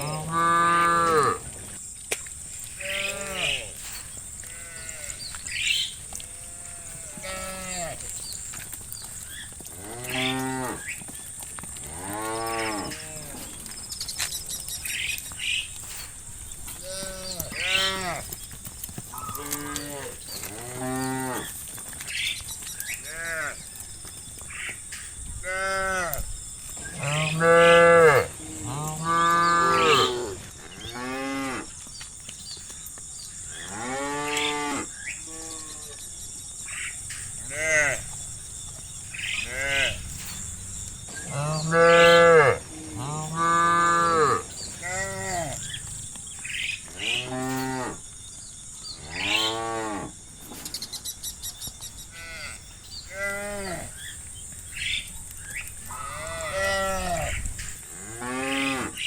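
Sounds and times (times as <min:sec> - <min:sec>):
cattle mooing: 0:02.8 - 0:08.2, 0:09.8 - 0:10.9, 0:16.8 - 0:18.4, 0:26.9 - 0:31.7, 0:39.4 - 0:45.8.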